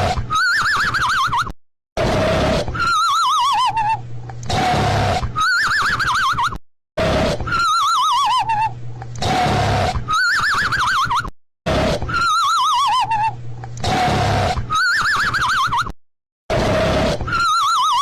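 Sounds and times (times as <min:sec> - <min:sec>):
cartoon snoring: 0:02.0 - 0:03.0, 0:04.5 - 0:05.5, 0:07.0 - 0:07.7, 0:09.2 - 0:10.1, 0:11.7 - 0:12.4, 0:13.8 - 0:14.9, 0:16.5 - 0:18.0.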